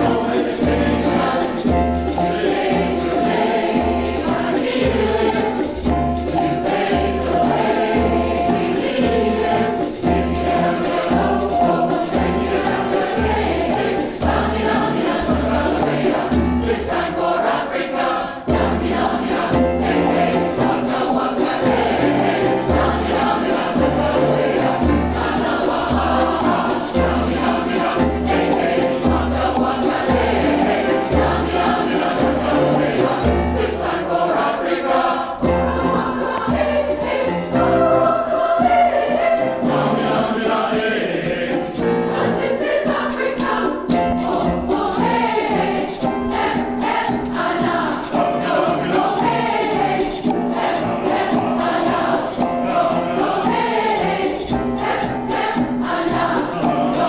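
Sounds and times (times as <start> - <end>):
low percussion beat: 0.0 - 16.8, 18.5 - 33.7
quick high rhythm: 0.0 - 17.1, 18.5 - 34.3, 35.4 - 57.0
mixed choir singing in parts: 0.0 - 57.0.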